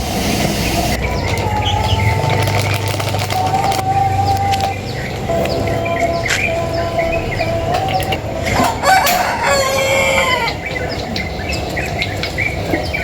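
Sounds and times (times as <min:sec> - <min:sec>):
small birds chirping: 0:00.0 - 0:13.0
rooster crowing: 0:00.6 - 0:04.6, 0:05.3 - 0:11.0.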